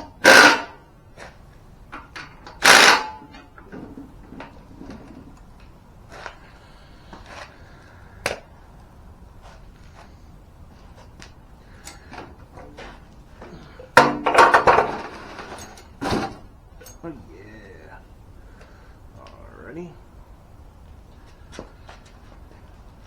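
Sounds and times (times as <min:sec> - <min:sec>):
metal parts clattering: 0:02.0 - 0:05.1, 0:13.8 - 0:17.1.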